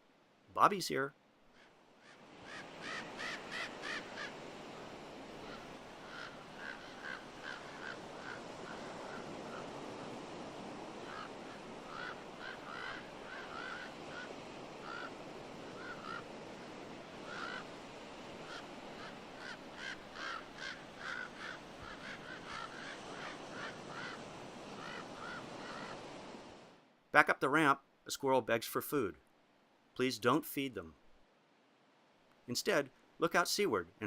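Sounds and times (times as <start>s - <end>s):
steady background hiss: 0.0s - 34.0s
ravens harsh alarm calls: 1.6s - 9.9s, 11.0s - 16.4s, 17.0s - 26.0s.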